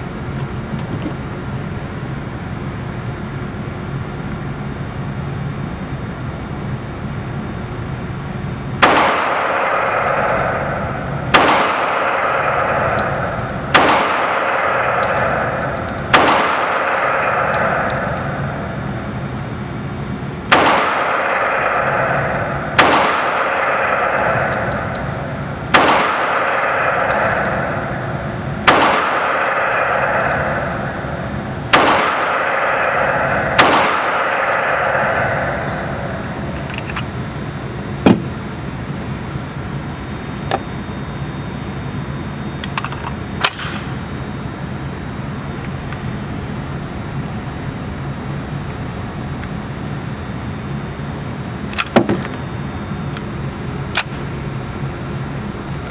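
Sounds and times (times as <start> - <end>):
pistol shots with echo: 8.8 - 19.6, 20.4 - 38.8.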